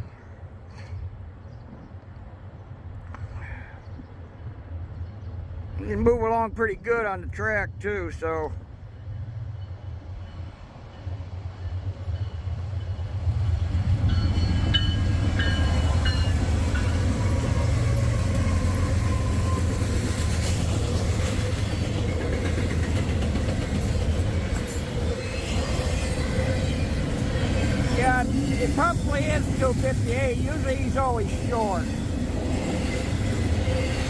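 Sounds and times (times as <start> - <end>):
freight train rumbling past: 4.5 - 34.0
train wheels clickety-clack: 9.7 - 34.0.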